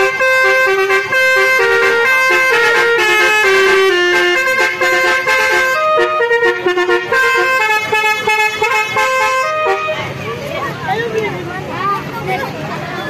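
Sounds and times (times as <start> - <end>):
multi-tone bus horn melody: 0.0 - 10.4.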